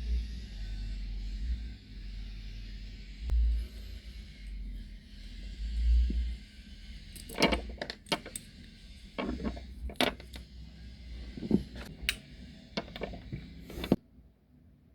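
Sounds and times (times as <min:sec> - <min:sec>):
plastic and metal parts clicking: 0:07.2 - 0:08.5, 0:09.2 - 0:10.4, 0:11.2 - 0:12.2, 0:12.8 - 0:14.0.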